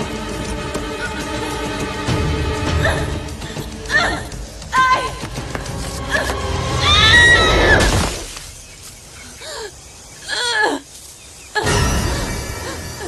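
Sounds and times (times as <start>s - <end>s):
high wavering screams: 6.8s - 8.0s.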